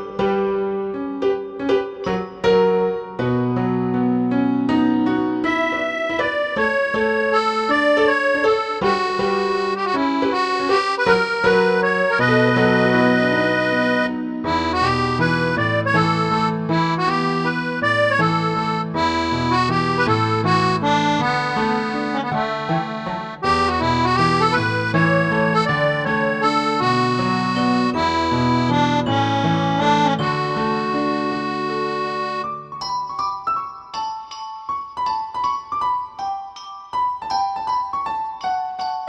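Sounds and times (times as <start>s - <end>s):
accordion playing lively tune: 5.4s - 32.8s
bass line: 11.2s - 30.9s.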